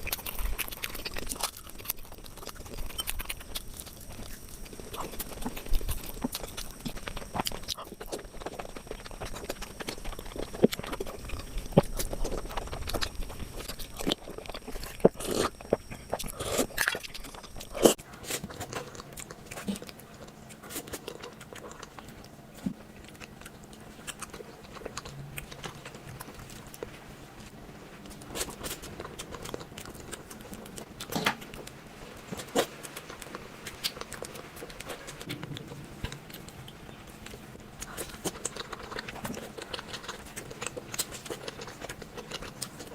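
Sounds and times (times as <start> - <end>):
person chewing crunchy sweet: 0.0 - 42.9.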